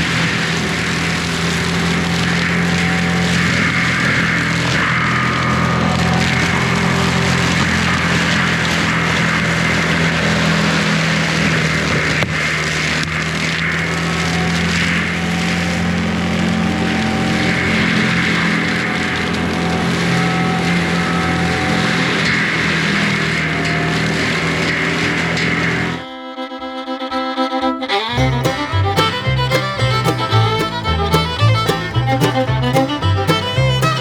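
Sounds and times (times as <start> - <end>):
diesel engine running: 28.2 - 34.0
mulcher head grinding wood: 28.2 - 34.0.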